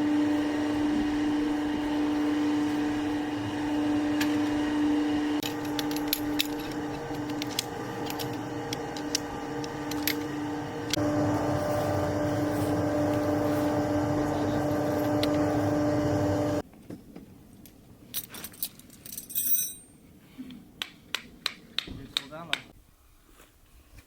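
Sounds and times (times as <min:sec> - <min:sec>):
motor vehicle droning: 0:00.0 - 0:16.6.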